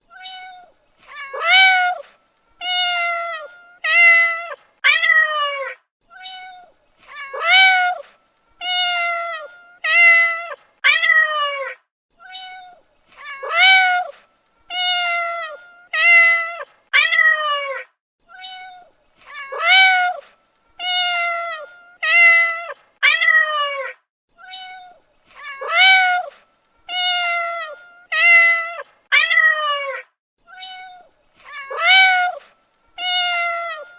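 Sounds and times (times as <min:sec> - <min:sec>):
cat meowing: 0:00.1 - 0:33.9.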